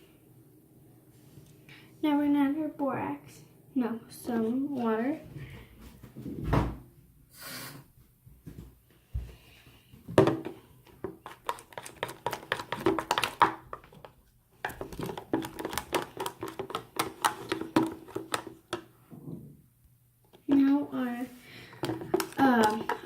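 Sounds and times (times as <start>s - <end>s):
slime stirred in a bowl: 10.3s - 19.1s, 20.3s - 23.0s.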